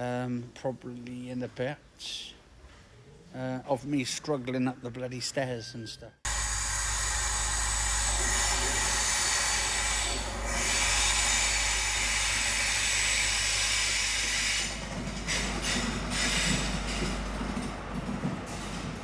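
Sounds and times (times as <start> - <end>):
train wheels hissing on rails: 6.3 - 19.0
train rumble: 7.2 - 19.0.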